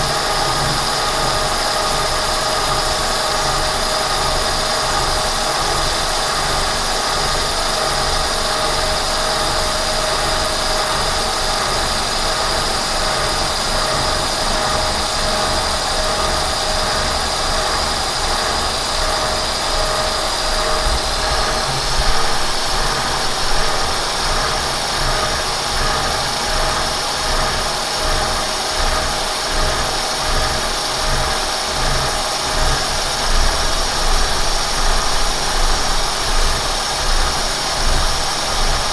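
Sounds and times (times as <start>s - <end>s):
milling machine gearing whine: 0.0s - 38.9s
low machine rumble: 10.6s - 38.9s.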